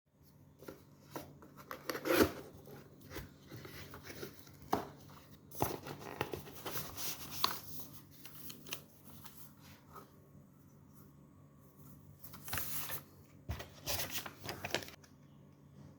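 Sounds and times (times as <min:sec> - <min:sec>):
cardboard and plastic rustling: 0:00.5 - 0:10.1, 0:12.1 - 0:15.0.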